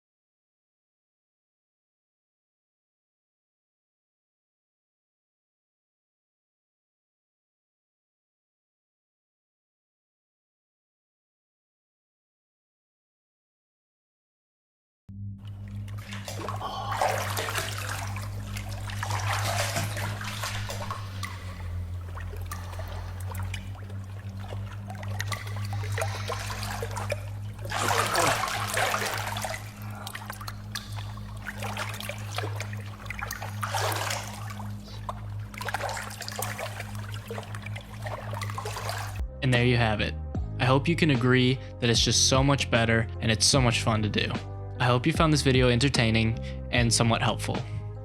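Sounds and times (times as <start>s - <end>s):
low room-tone hum: 15.3s - 39.2s
water splashing and dripping: 15.4s - 39.2s.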